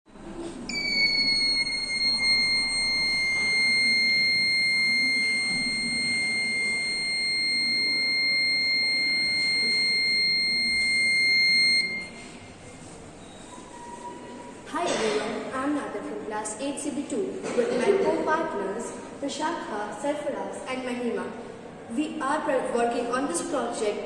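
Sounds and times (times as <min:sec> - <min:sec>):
high-pitched buzzer tone: 0:00.7 - 0:12.3.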